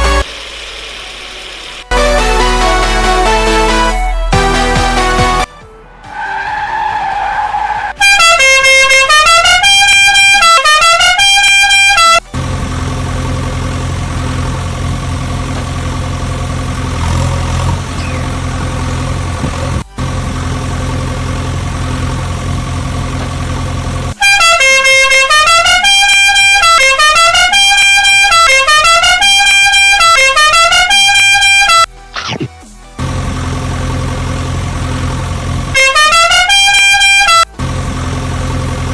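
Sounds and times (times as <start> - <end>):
low engine-like drone: 0.0 - 5.6, 12.2 - 38.9
electronic horn-like beeping tune: 1.9 - 5.6, 8.0 - 12.4, 24.2 - 32.3, 35.7 - 37.6.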